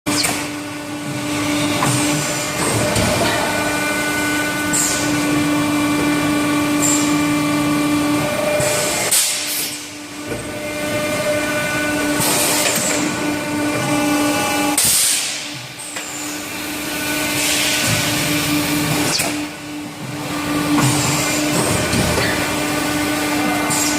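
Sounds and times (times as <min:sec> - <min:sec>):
machine motor hum: 0:00.1 - 0:23.9.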